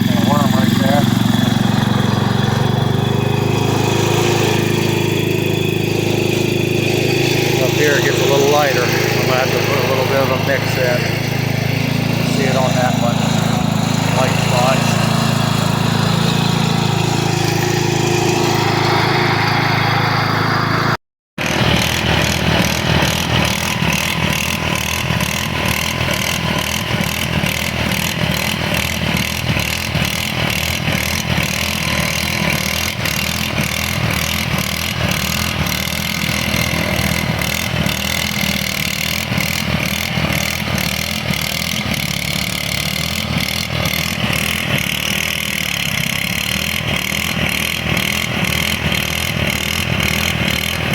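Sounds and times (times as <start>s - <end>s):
garden tractor engine running: 0.0s - 50.9s
fast even ticking clatter: 21.4s - 50.9s.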